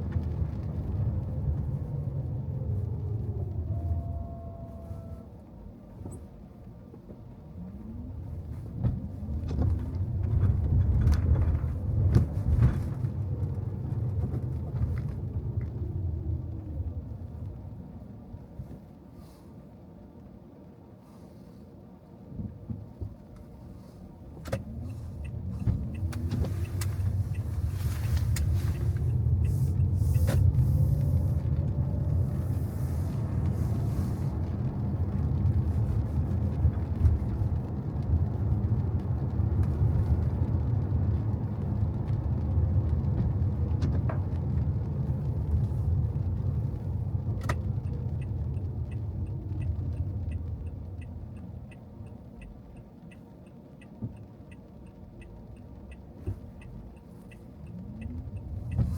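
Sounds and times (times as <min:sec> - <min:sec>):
car road rumble: 0:00.0 - 0:58.9
tyres hissing on wet road: 0:24.7 - 0:38.0
faint regular ticking: 0:47.5 - 0:58.9.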